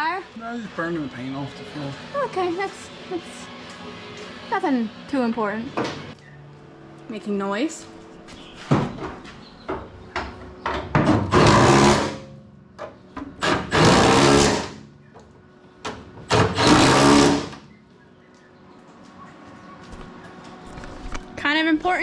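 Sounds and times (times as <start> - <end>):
power tool buzzing rattle: 11.1 - 12.6, 13.2 - 15.0, 16.3 - 17.8.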